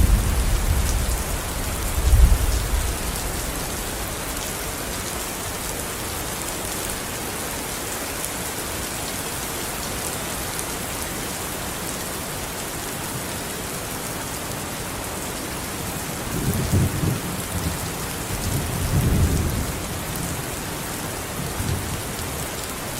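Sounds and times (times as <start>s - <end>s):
low rolls of thunder: 0.0s - 4.2s
steady rain falling: 0.0s - 22.9s.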